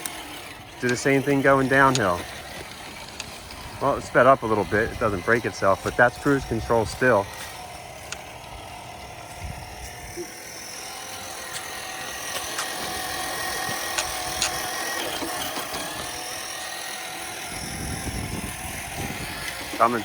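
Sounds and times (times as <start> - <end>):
electric motor and gears whining: 0.0 - 20.0
small clicks: 13.6 - 16.1.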